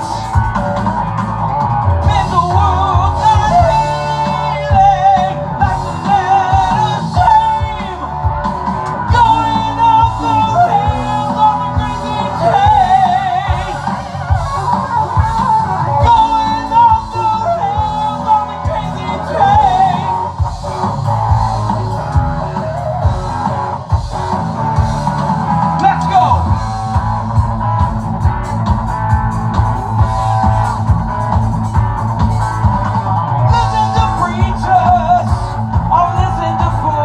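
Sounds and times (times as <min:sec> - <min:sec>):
rock music: 0:00.0 - 0:37.0
singer with vibrato: 0:02.0 - 0:23.5, 0:33.4 - 0:37.0.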